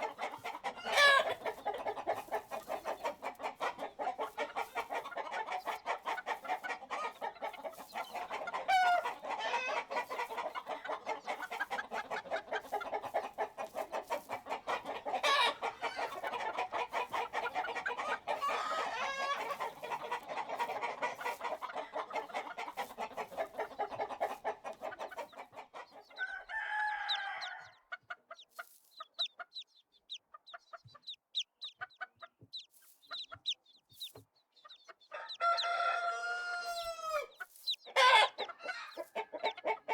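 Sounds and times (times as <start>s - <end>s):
chickens clucking: 0.0s - 39.9s
rooster crowing: 26.2s - 27.8s, 35.2s - 37.3s.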